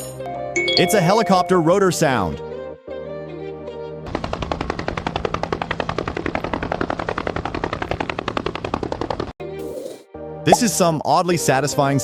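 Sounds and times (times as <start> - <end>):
helicopter rotor blades chopping: 4.1 - 9.3.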